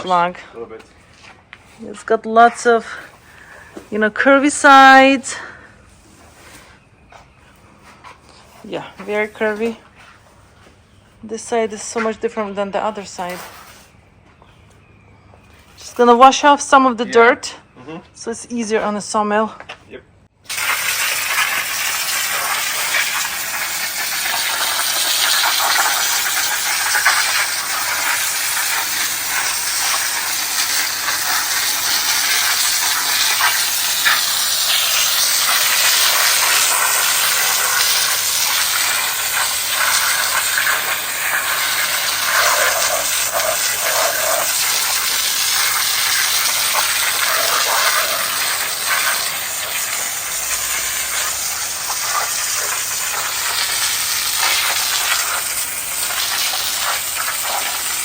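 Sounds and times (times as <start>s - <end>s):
water spraying onto log: 20.5s - 58.0s.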